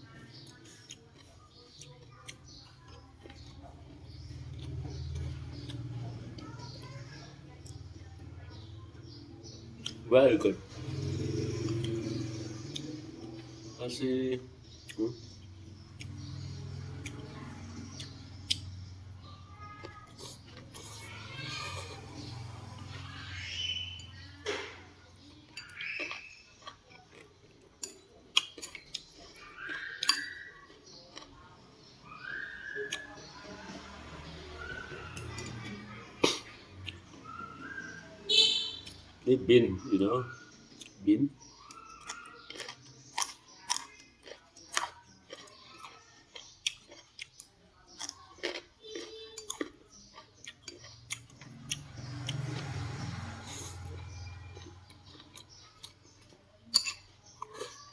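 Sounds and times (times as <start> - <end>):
person chewing and crunching food: 0.0 - 9.2, 14.6 - 37.9, 40.6 - 57.9
utensils clinking against a bowl: 19.8 - 31.3, 48.0 - 57.9.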